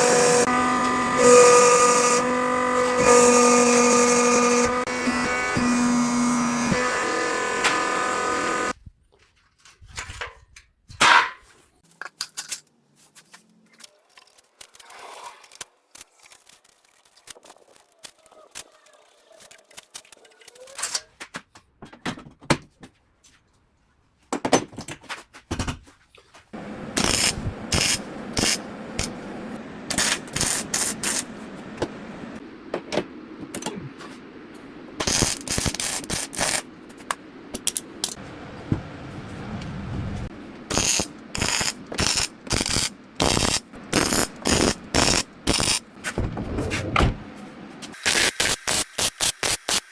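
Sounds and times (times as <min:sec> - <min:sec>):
steady noise with rapid clicking: 0:34.9 - 0:38.2, 0:47.8 - 0:49.9.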